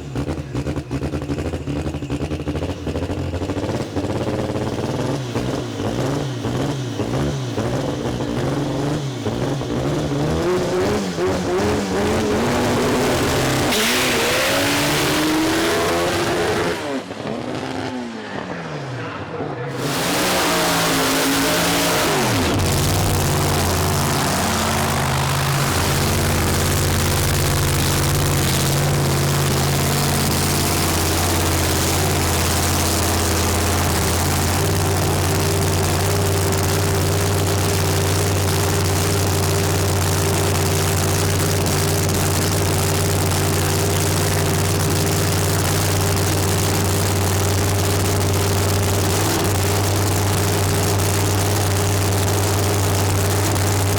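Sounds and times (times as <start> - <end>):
engine droning: 0.0 - 53.9.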